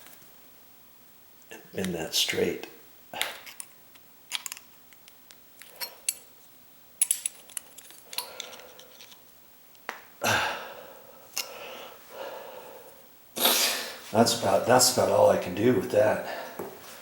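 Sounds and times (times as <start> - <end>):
loud puff of noise: 13.4 - 14.0.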